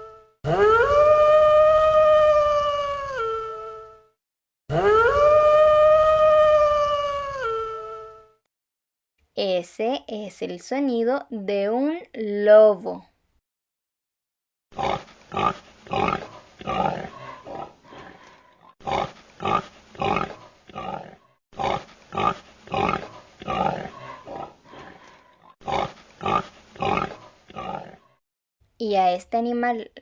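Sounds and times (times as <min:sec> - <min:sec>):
pig grunting: 0:14.8 - 0:28.2.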